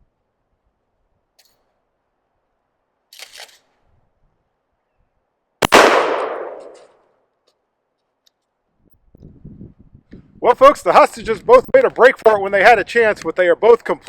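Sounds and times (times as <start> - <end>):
shotgun shot with echo: 5.6 - 6.9.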